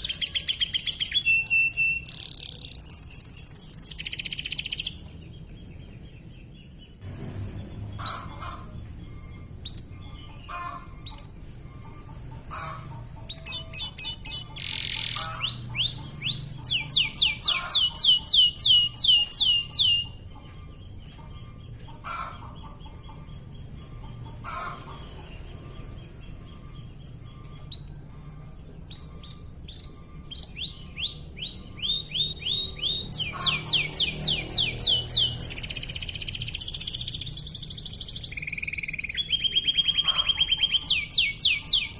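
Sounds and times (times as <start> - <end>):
canary singing fast trills: 0.0 - 7.0, 7.6 - 41.9.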